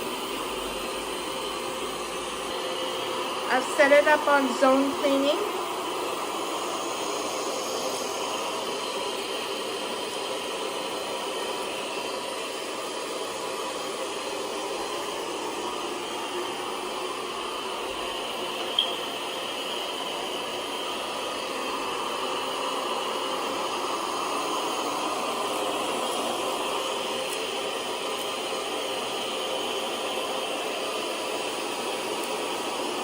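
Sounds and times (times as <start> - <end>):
sharp click: 18.6 - 19.0.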